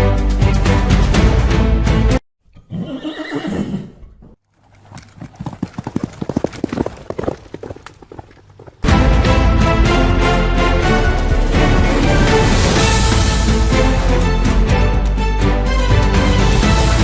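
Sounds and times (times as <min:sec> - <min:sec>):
background music: 0:00.0 - 0:02.2, 0:08.8 - 0:17.0
hoofbeats: 0:04.0 - 0:08.9.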